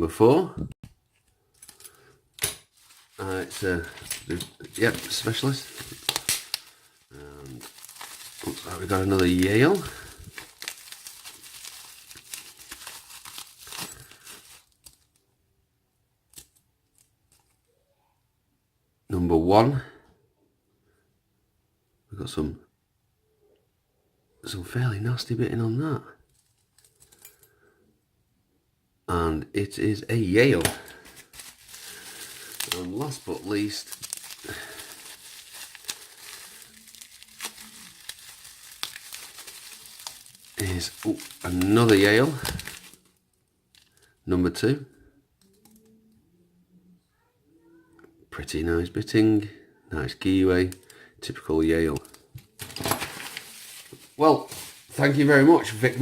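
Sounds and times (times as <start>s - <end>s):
packaging crinkling and tearing: 2.6s - 15.2s, 30.5s - 44.1s, 51.9s - 56.0s.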